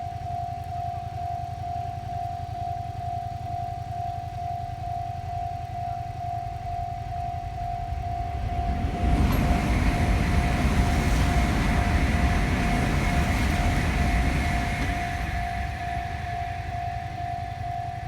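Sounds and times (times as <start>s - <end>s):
level-crossing warning bell: 0.0s - 18.0s
loud rumbling noise: 7.7s - 18.0s.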